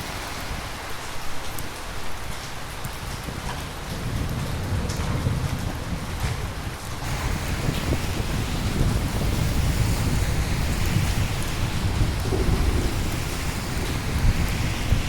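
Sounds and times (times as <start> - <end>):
heavy rain: 0.0 - 15.0
thunder rumbling: 3.8 - 15.0.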